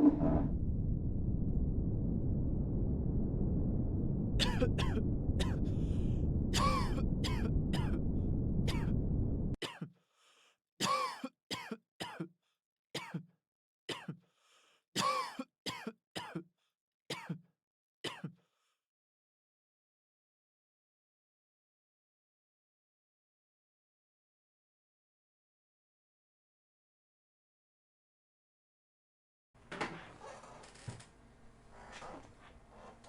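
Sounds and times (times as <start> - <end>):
low background rumble: 0.0 - 9.6
person coughing and clearing throat: 4.4 - 5.6, 6.6 - 8.0, 8.7 - 8.9, 9.6 - 9.9, 10.8 - 12.3, 13.0 - 13.3, 13.9 - 14.2, 15.0 - 16.5, 17.1 - 17.4, 18.1 - 18.4.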